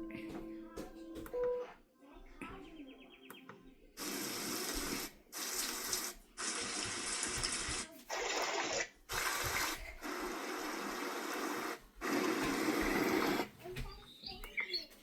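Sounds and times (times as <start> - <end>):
water-like hiss from sound machine: 4.0 - 10.7.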